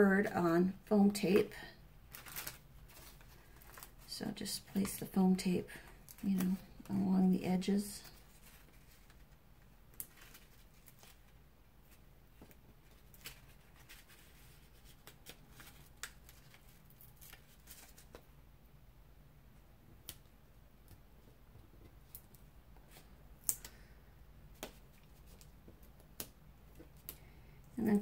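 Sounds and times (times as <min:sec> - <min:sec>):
paper and tape rustling: 0:01.3 - 0:05.2, 0:07.9 - 0:18.3.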